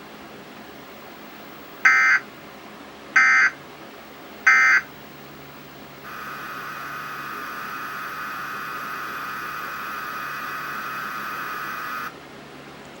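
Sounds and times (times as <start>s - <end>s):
hissing static: 6.0s - 12.1s.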